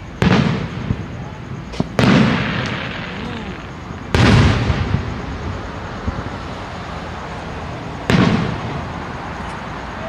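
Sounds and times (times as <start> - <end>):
firework bang: 0.0 - 6.4, 8.0 - 9.0
fireworks rumble and crackle: 0.0 - 10.0.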